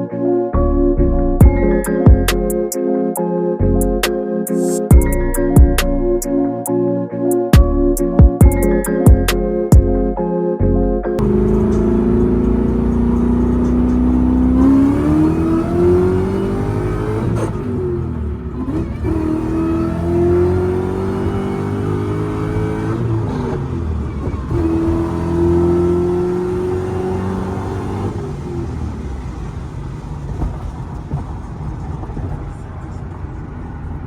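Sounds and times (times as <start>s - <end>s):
car engine accelerating hard: 11.2s - 34.0s.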